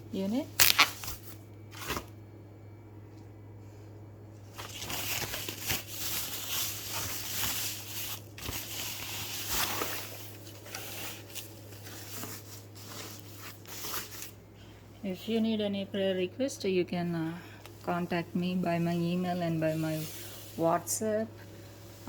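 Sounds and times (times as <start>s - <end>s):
packaging crinkling and rustling: 0.4s - 2.2s, 4.4s - 14.4s.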